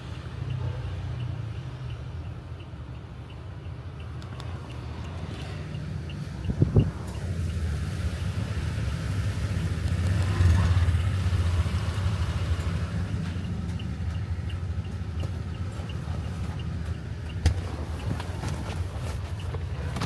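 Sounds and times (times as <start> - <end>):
car engine and road noise: 0.0 - 20.0.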